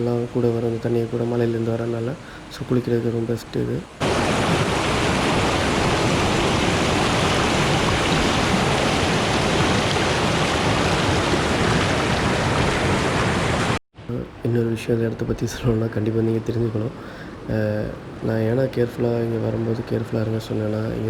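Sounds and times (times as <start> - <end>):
river cascading over rocks: 4.0 - 13.8.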